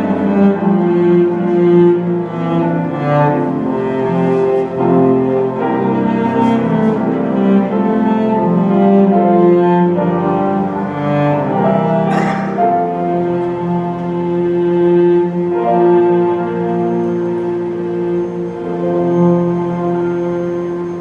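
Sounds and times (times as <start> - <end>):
cellos and basses holding notes: 0.0 - 21.0
orchestra playing: 0.0 - 21.0.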